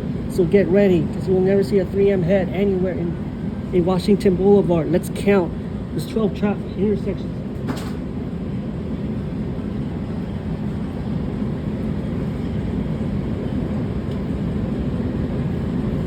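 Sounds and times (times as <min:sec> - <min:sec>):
light-rail car rumble: 0:05.3 - 0:16.0.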